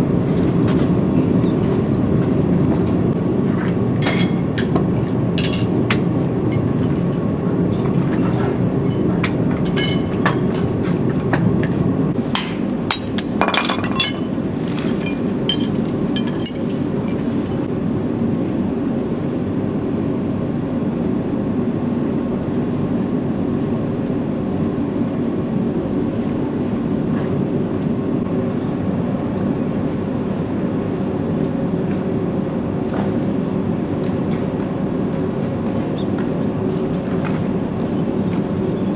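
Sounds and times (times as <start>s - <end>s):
metallic clinks of farrier tools: 4.0s - 7.9s, 8.8s - 10.8s, 12.2s - 17.6s.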